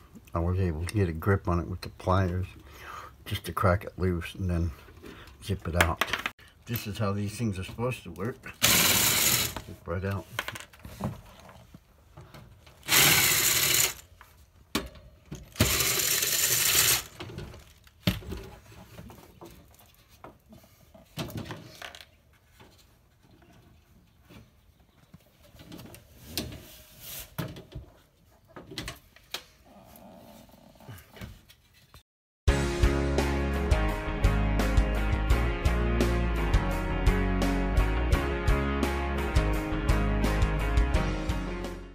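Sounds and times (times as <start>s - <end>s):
tools and metal parts clicking: 15.0s - 17.2s.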